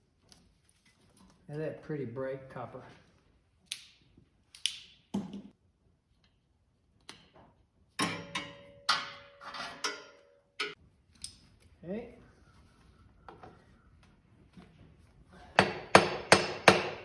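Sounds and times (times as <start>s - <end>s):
metal tools clicking and knocking: 8.0s - 11.3s.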